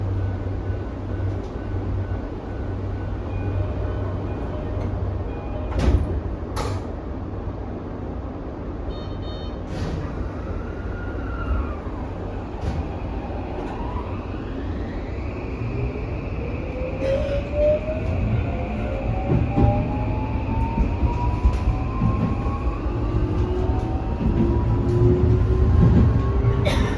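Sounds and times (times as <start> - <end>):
train car low hum: 0.0 - 26.9
train doors clunking: 3.9 - 7.1, 20.6 - 26.9.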